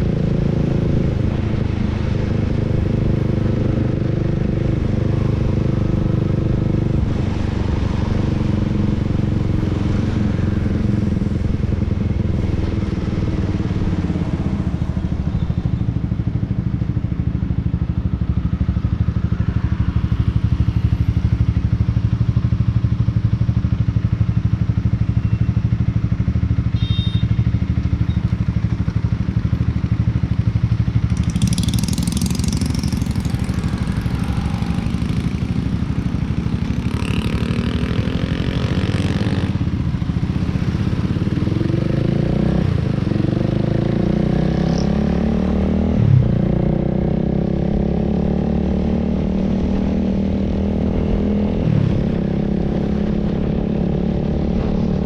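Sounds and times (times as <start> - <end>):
motorcycle engine while riding: 0.0 - 55.0.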